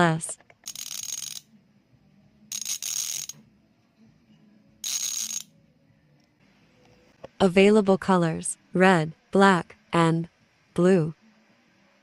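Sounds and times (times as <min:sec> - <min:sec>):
bicycle freehub clicking: 0:00.5 - 0:01.4, 0:02.5 - 0:03.4, 0:04.8 - 0:05.4.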